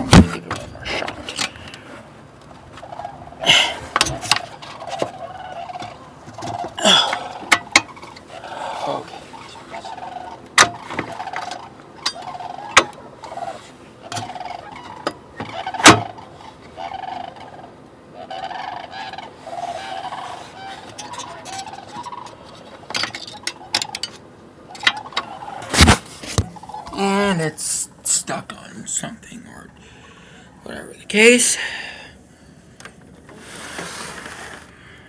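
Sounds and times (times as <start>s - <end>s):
waterfowl nasal calls: 2.7s - 22.7s, 24.6s - 25.9s, 26.5s - 27.0s.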